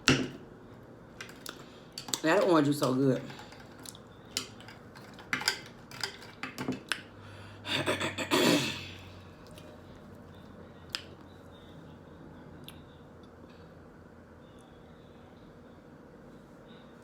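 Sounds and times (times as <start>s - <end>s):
dishes and cutlery clinking: 3.2s - 6.9s.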